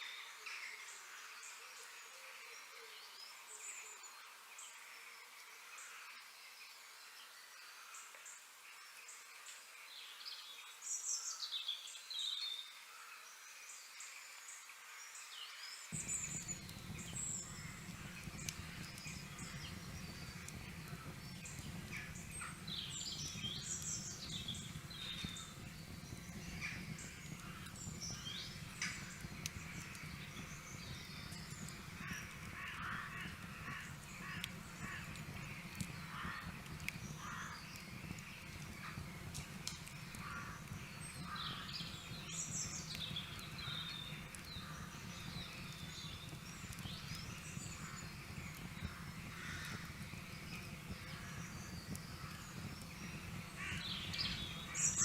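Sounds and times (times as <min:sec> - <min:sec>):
birds chirping: 0:15.9 - 0:55.0
steady low rumble: 0:16.0 - 0:55.0.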